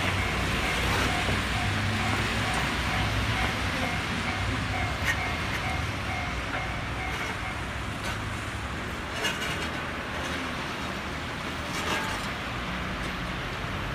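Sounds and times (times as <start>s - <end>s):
crossing alarm dinging: 0.0s - 8.3s
car and truck engines: 0.0s - 13.9s
tyres on road: 0.0s - 13.9s.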